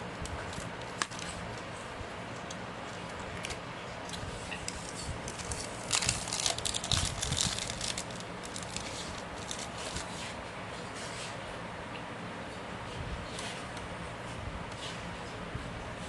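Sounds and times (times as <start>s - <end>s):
packaging crinkling: 0.0s - 1.7s, 2.4s - 10.3s.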